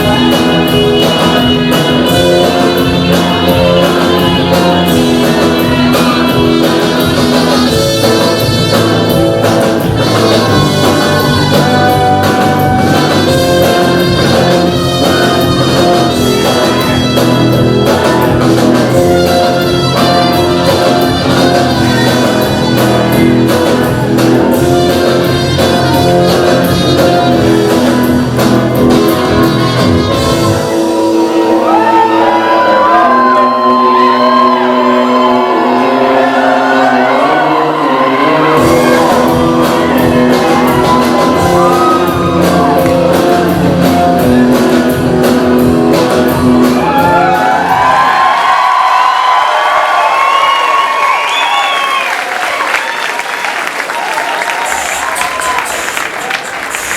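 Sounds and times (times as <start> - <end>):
loud music with driving beat: 0.0 - 49.2
singing voices: 30.9 - 44.5, 54.5 - 56.9.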